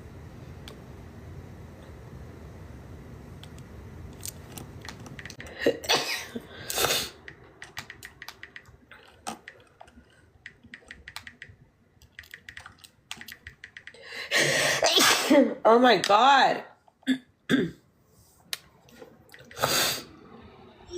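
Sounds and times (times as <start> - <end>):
woman sneezing: 5.6 - 6.4, 14.6 - 15.6.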